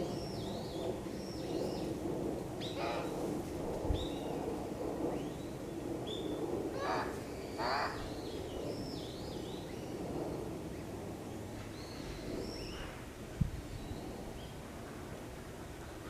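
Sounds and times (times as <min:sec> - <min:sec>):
harsh caw-like bird calls: 0:02.7 - 0:03.2, 0:06.7 - 0:08.3.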